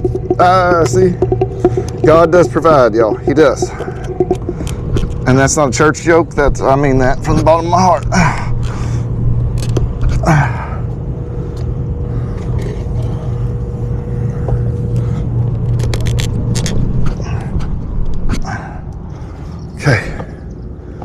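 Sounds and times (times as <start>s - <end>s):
sharp clicks and knocks: 0.0s - 5.4s
faint steady tone: 0.0s - 7.8s
hvac unit humming: 0.0s - 21.0s.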